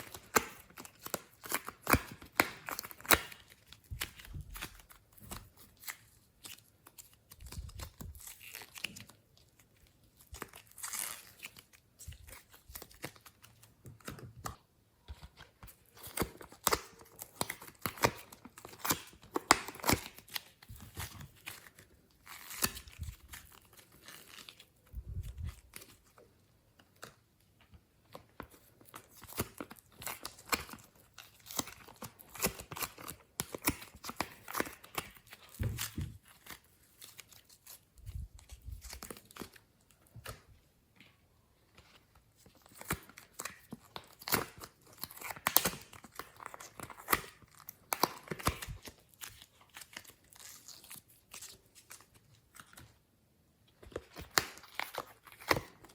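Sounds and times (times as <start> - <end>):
slime squishing with sticky crackles: 0.0 - 55.9.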